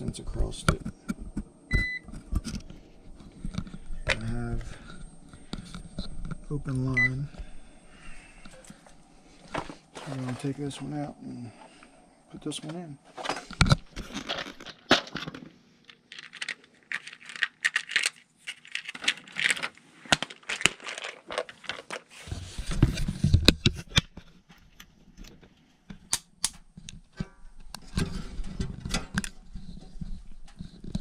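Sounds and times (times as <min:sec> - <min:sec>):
hands crinkling and tearing: 0:15.9 - 0:22.2.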